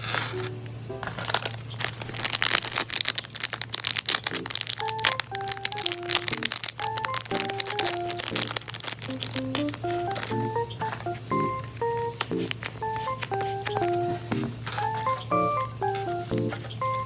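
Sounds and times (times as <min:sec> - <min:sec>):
crinkling material: 0:00.0 - 0:11.2, 0:12.1 - 0:17.0
simple background melody: 0:04.3 - 0:17.0.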